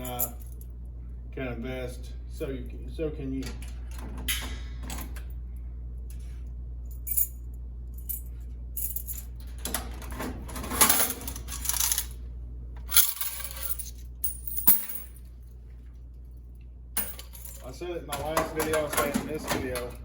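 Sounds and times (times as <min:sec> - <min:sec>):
coins clinking: 0:06.9 - 0:09.4, 0:10.7 - 0:12.2, 0:12.8 - 0:15.3, 0:17.0 - 0:17.7.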